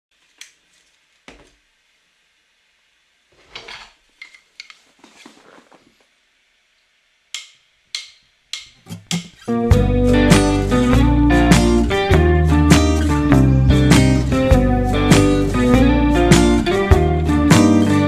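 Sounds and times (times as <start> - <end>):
rubbing and scraping: 4.8 - 6.0.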